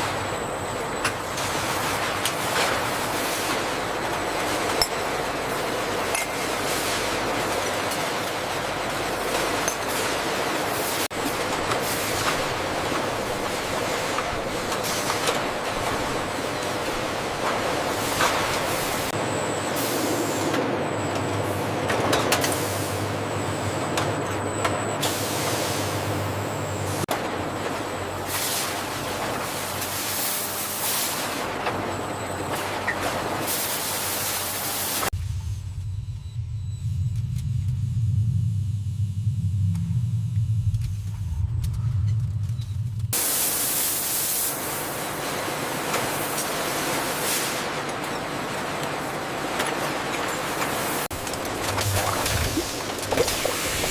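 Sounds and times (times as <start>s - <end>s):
machinery humming: 34.7s - 46.3s, 47.6s - 53.9s.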